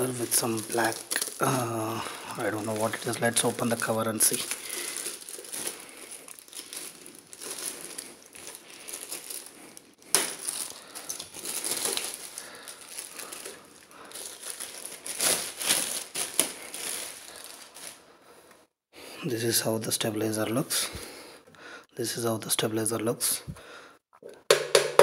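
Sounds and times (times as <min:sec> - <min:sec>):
sharp plastic crackles: 0:00.0 - 0:18.0
packaging crinkling and rustling: 0:00.0 - 0:18.1.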